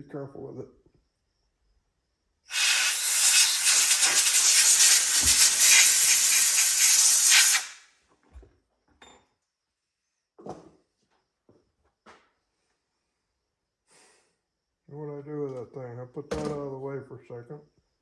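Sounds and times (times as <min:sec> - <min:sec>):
pressurised air nozzle hissing: 0:02.5 - 0:07.8.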